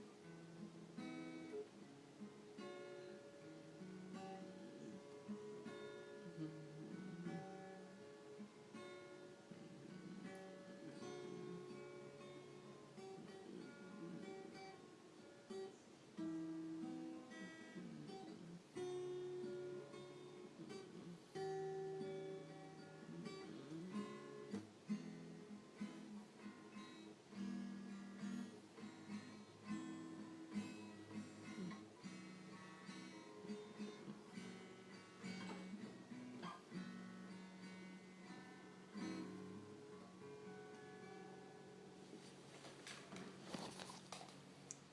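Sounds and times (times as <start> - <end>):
acoustic guitar strummed chords: 0.0 - 44.6
picked guitar notes: 0.0 - 44.9
faint clicks: 42.3 - 44.9.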